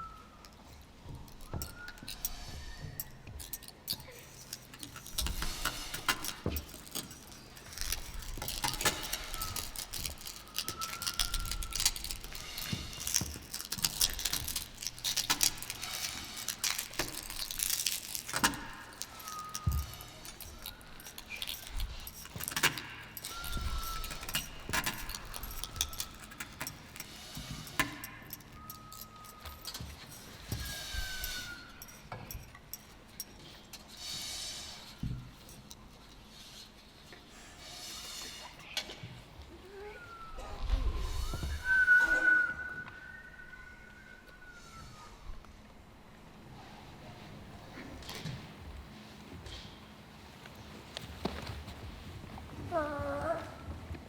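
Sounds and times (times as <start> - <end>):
thin whistle-like tone: 0.0 - 3.7, 8.4 - 17.5, 18.4 - 32.3, 39.7 - 45.7
small hard objects jingling: 1.4 - 34.0.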